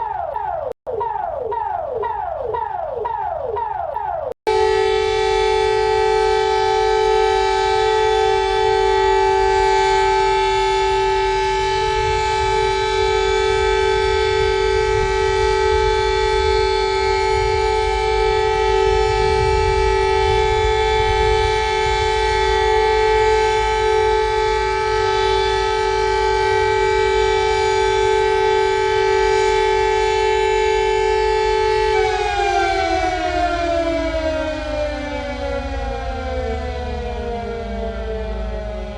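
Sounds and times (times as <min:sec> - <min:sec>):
emergency alert alarm tone: 0:00.0 - 0:38.9.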